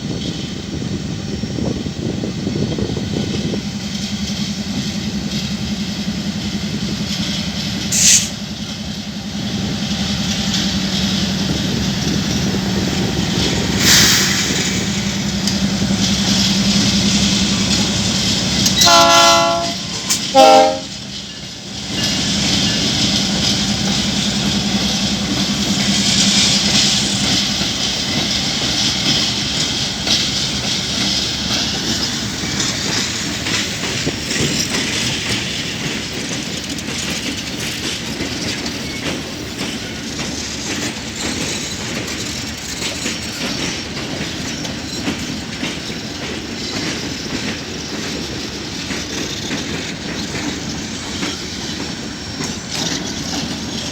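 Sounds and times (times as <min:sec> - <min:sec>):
wheel and rail rushing noise: 0:00.0 - 0:53.9
train wheels clacking: 0:01.6 - 0:53.9
locomotive air horn: 0:18.6 - 0:21.0.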